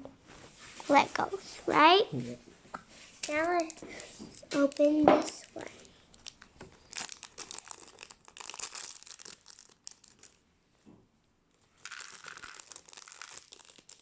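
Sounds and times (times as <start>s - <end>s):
plastic packaging crinkling and tearing: 3.2s - 10.4s, 11.8s - 14.0s.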